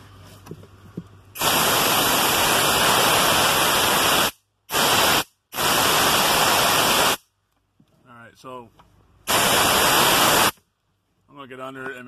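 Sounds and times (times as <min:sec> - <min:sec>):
compressed air blow gun hissing: 0:01.4 - 0:07.2, 0:09.3 - 0:10.6.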